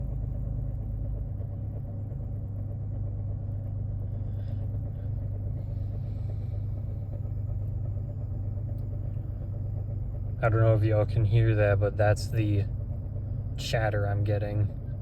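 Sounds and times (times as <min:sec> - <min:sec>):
car engine idling: 0:00.0 - 0:15.0
rhythmic engine chatter: 0:00.0 - 0:15.0.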